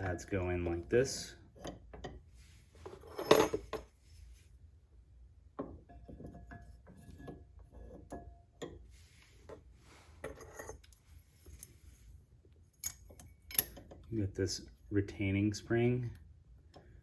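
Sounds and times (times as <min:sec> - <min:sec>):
light metallic ring: 0:12.7 - 0:13.8
metal clinks and taps: 0:12.8 - 0:14.1.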